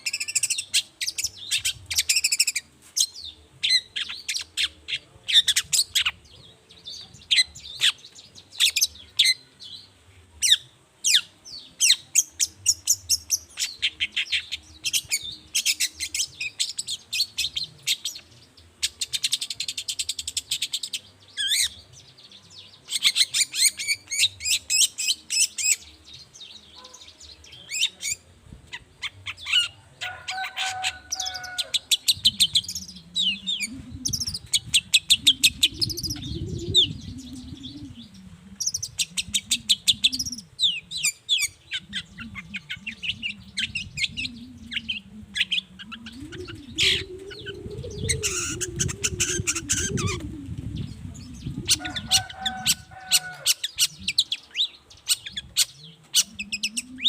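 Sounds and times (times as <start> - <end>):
bird chattering song: 0.0 - 57.0
low whistled bird notes: 32.0 - 53.2
low wavering drone: 32.1 - 52.9.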